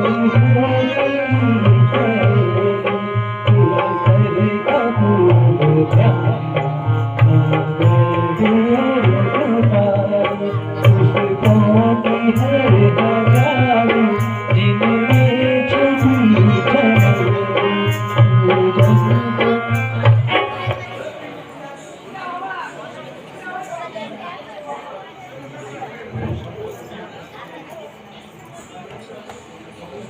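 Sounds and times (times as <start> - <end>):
tabla rhythm: 0.0 - 21.0.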